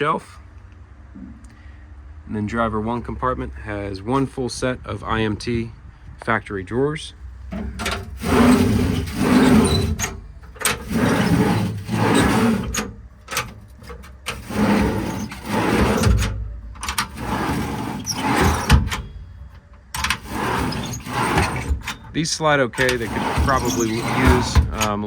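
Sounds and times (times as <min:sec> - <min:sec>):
metal drawers sliding and clunking: 0:07.5 - 0:22.2, 0:22.8 - 0:25.0.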